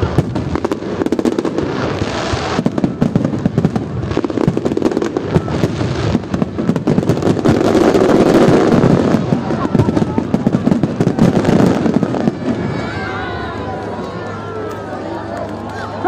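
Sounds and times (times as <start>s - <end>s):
fireworks bangs and crackles: 0.0s - 15.8s.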